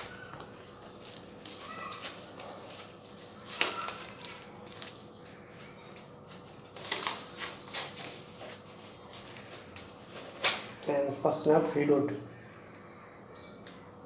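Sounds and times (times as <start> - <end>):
packaging crinkling and clicking: 0.0 - 5.0, 6.4 - 8.6.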